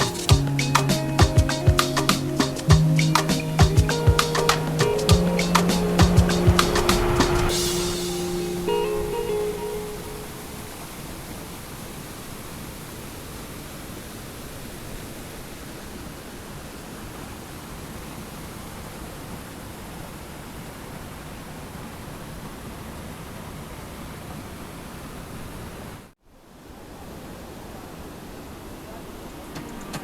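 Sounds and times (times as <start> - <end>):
steady rushing noise: 0.0 - 11.0.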